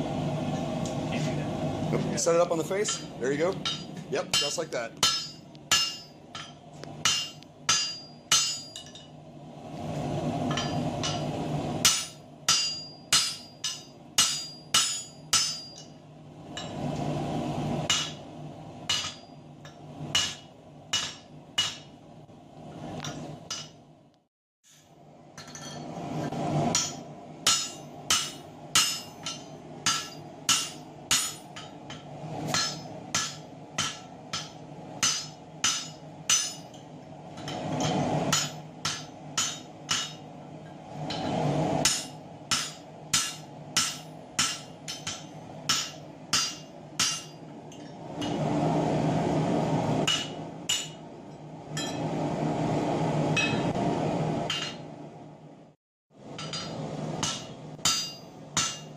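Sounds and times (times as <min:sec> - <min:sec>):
hammers ringing on anvil: 0:02.8 - 0:09.2, 0:10.5 - 0:16.0, 0:17.9 - 0:18.2, 0:18.9 - 0:21.9, 0:26.7 - 0:40.3, 0:41.1 - 0:47.9, 0:50.1 - 0:51.0, 0:53.4 - 0:53.7, 0:56.4 - 0:58.9.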